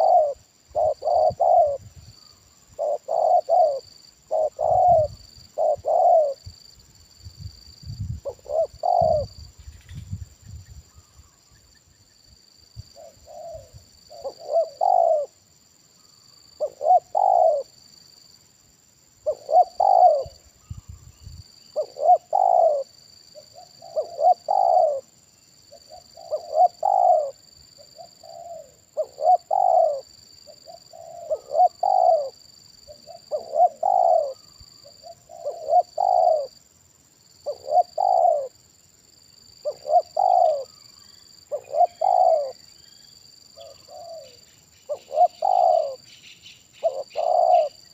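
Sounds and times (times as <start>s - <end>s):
dove cooing: 0.0s - 1.9s, 2.7s - 6.5s, 8.2s - 9.4s, 13.0s - 15.4s, 16.6s - 17.7s, 19.2s - 20.9s, 21.8s - 25.1s, 25.8s - 36.6s, 37.4s - 38.6s, 39.6s - 40.9s, 41.5s - 42.7s, 43.6s - 46.1s, 46.8s - 47.9s.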